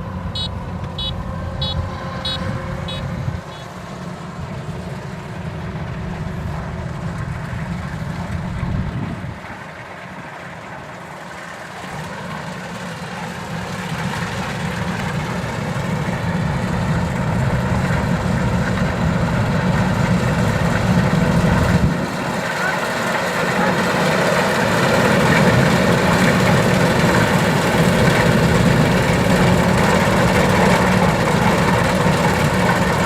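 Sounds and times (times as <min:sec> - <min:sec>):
combine harvester engine drone: 0:00.0 - 0:33.0.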